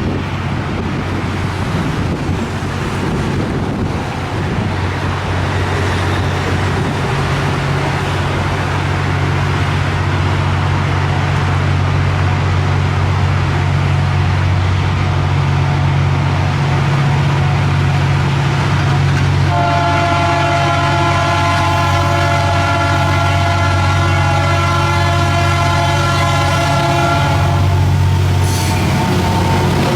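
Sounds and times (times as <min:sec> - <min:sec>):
locomotive engine drone: 0:00.0 - 0:29.9
multi-tone air horn: 0:19.5 - 0:29.9.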